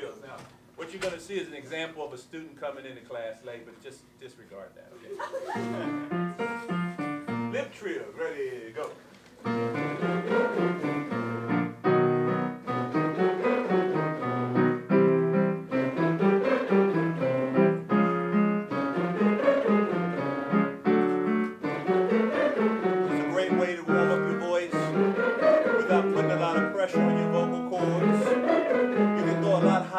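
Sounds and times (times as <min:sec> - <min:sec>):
piano chords: 0:05.6 - 0:07.8, 0:09.4 - 0:29.9
choir singing lip trills: 0:09.4 - 0:29.9.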